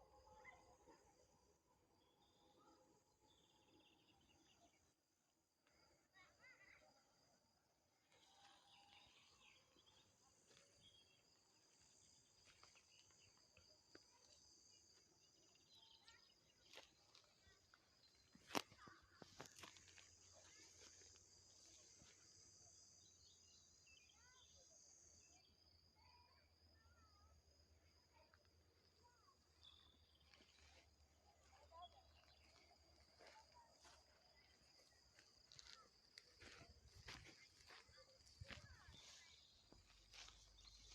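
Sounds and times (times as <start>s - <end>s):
soft bird chirps: 8.0s - 27.3s, 28.1s - 40.9s.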